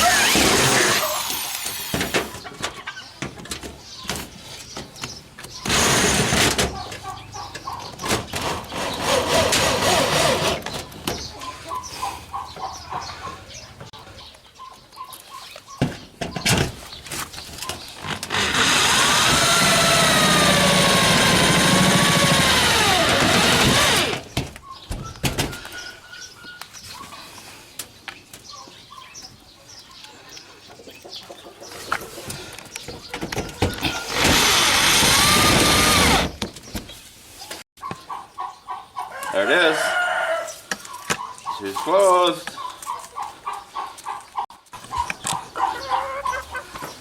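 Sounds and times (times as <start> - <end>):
power drill driving screws into tin: 0.0 - 2.4.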